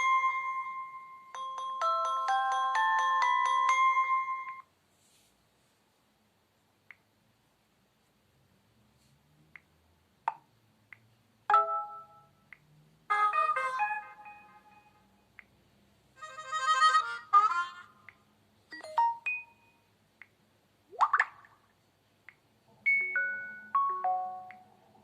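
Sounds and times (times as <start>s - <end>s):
phone notification tones: 11.5s - 12.3s, 18.7s - 19.8s, 22.9s - 24.6s.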